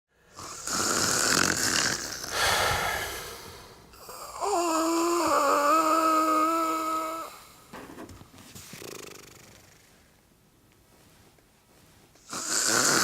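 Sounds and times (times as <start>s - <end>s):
person snoring: 0.3s - 7.6s, 12.2s - 13.0s.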